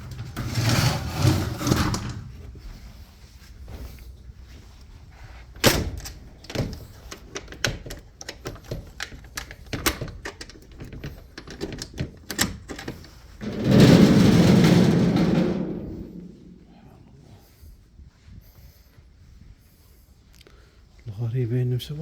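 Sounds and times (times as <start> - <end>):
sharp clicks and knocks: 5.6 - 16.6
loud rushing noise: 13.6 - 16.8.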